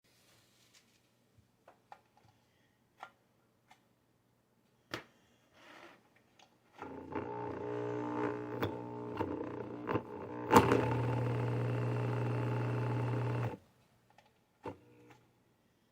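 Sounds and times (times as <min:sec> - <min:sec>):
pump motor humming: 0:06.8 - 0:13.6.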